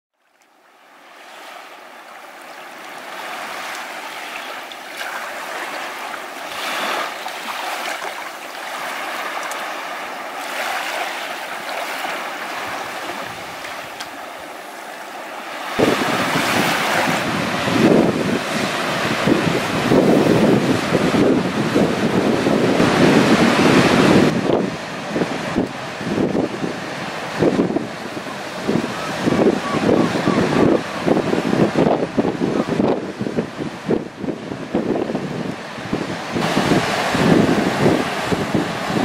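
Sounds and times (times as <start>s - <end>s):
sea waves breaking on shore: 0.2s - 39.0s
wind buffeting microphone: 11.8s - 14.6s, 15.6s - 39.0s.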